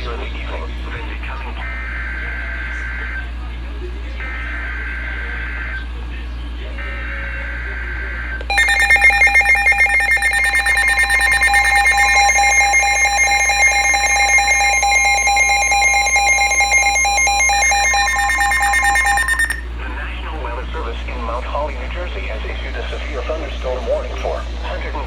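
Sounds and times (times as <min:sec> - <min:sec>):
pulsing electronic alarm tone: 0:08.5 - 0:19.6.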